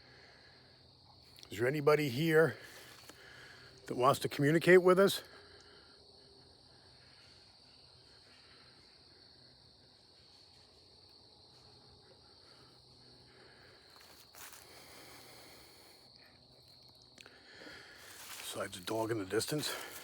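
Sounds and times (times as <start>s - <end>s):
faint high-pitched insect drone: 0.0s - 20.0s.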